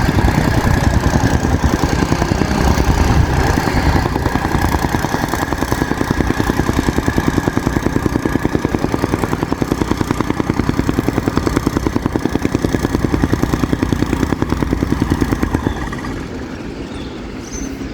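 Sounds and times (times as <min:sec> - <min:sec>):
soil compactor pounding: 0:00.0 - 0:17.4
small engine running: 0:00.0 - 0:17.9.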